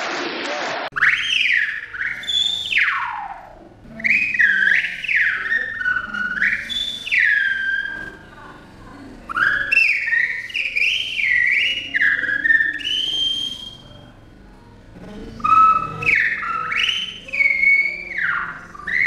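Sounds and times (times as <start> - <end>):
person whistling gliding phrases: 1.0 - 3.2, 3.9 - 8.2, 9.3 - 14.2, 15.4 - 19.0.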